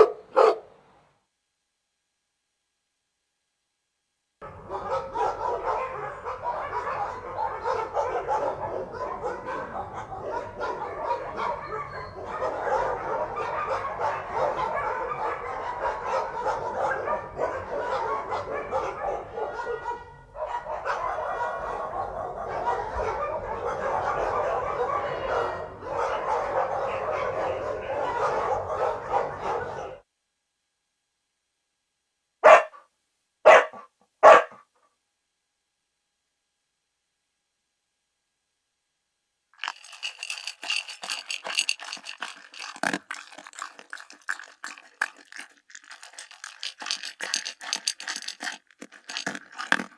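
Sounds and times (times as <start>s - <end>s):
dogs barking and yipping: 0.0s - 0.6s, 4.5s - 30.0s, 33.5s - 34.6s, 39.6s - 49.9s
single dog barking loudly: 0.0s - 0.7s, 4.4s - 30.0s, 32.4s - 34.7s.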